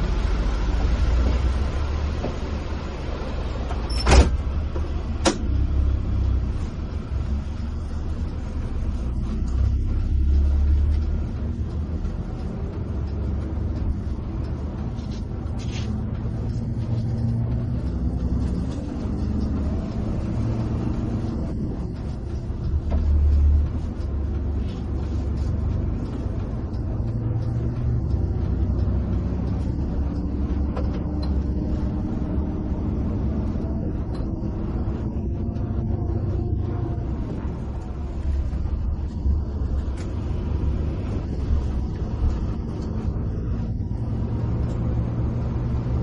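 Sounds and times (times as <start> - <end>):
bus engine and tyres rumbling: 0.0 - 46.0.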